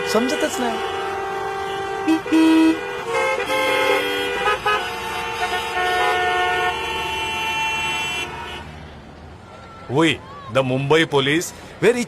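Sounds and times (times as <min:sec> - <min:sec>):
car horns honking: 0:00.0 - 0:08.9.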